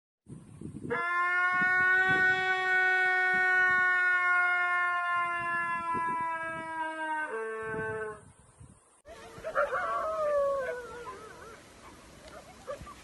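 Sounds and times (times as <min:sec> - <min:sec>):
wolf howling: 0:00.9 - 0:08.2, 0:09.1 - 0:12.0.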